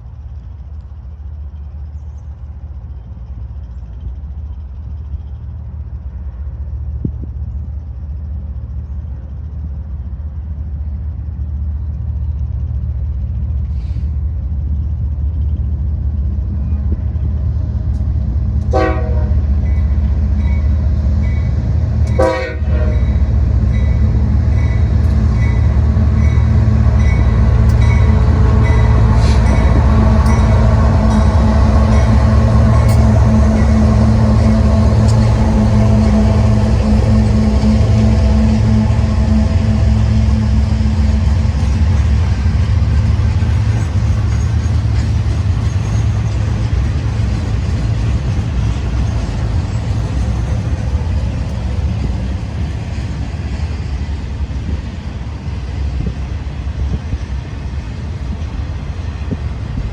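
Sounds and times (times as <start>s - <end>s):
locomotive engine rumble: 0.0s - 59.9s
train horn blasts: 18.6s - 42.6s.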